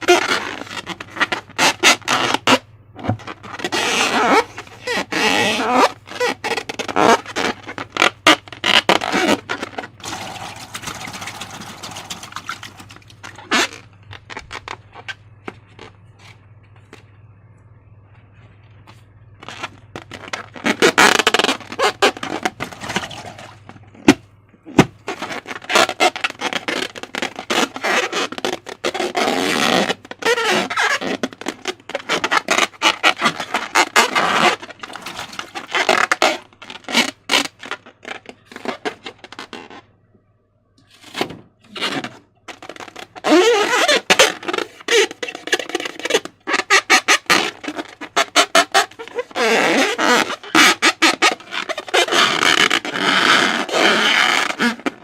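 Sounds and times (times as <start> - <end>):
slime squelching and crackling: 3.2 - 15.2.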